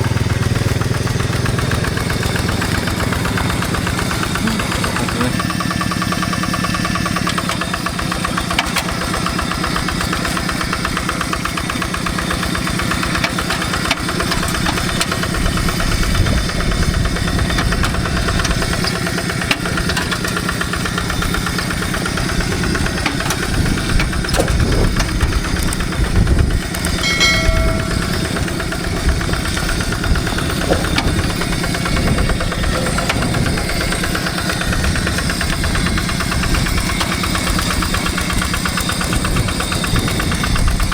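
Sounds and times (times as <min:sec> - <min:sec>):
diesel engine chugging: 0:00.0 - 0:40.9.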